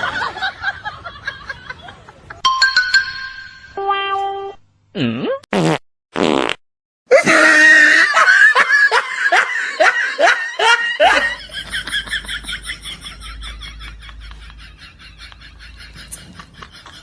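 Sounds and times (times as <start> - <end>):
laughter in bursts: 0.0 - 2.4, 7.2 - 17.0.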